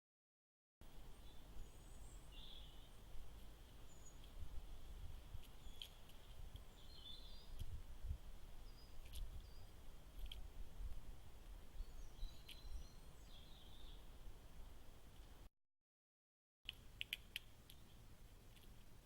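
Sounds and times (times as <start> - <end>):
small birds chirping: 0.8 - 15.5, 16.7 - 19.0
sharp clicks: 16.7 - 17.9.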